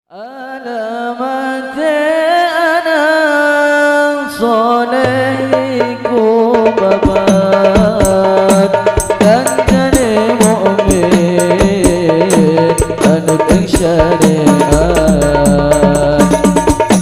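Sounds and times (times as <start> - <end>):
hand drums: 5.0 - 17.0
steady bass: 14.7 - 17.0.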